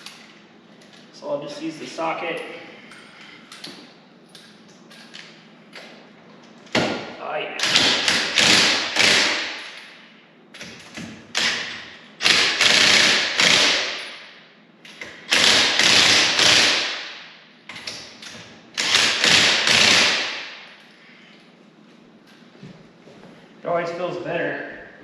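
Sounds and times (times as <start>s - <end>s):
impact driver hammering lug nuts: 6.8s - 9.8s, 11.0s - 14.3s, 15.0s - 17.0s, 18.8s - 20.7s.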